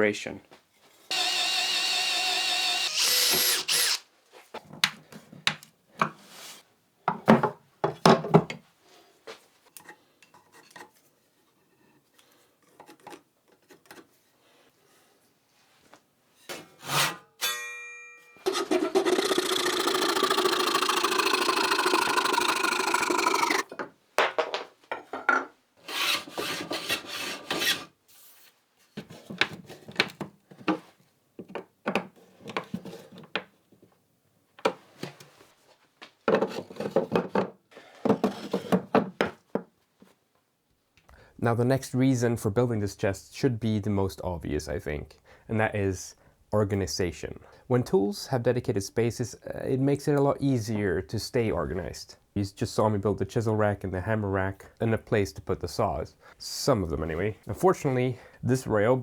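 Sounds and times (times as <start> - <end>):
power tool running: 1.1 - 4.0, 19.7 - 23.6
sawing strokes on wood: 25.8 - 27.9.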